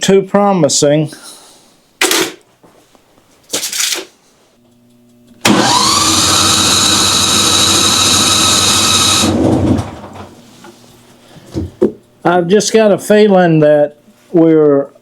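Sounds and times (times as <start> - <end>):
starter cranking engine: 5.4 - 9.9.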